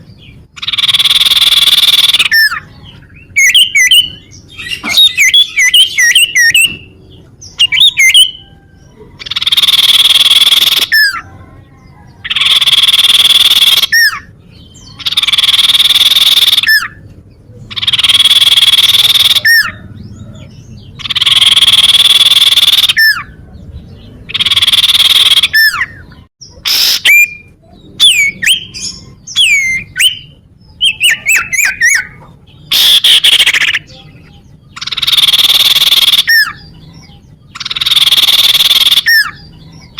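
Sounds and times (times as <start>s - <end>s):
bird chirps: 0.0s - 39.9s
bird rasping calls: 0.5s - 11.4s, 12.2s - 17.0s, 17.7s - 23.4s, 24.2s - 39.9s.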